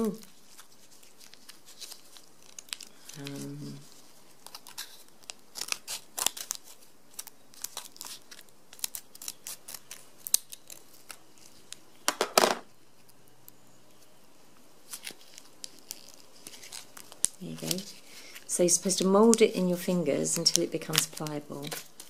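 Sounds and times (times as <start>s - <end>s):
foil sachet crinkling: 0.0s - 12.0s, 14.8s - 22.0s
packet tearing open: 0.5s - 3.7s, 4.3s - 11.7s, 14.9s - 18.5s.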